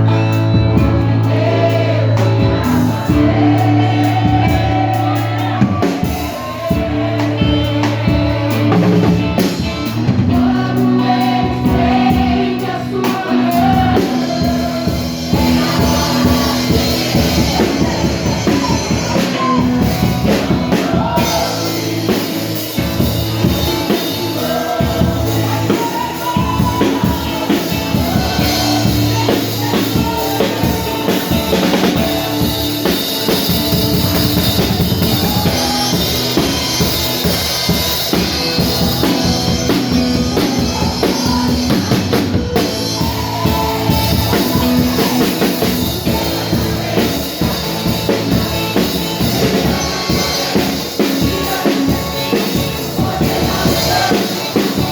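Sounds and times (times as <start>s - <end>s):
drum kit beat: 0.0s - 54.9s
rock band playing: 0.0s - 54.9s.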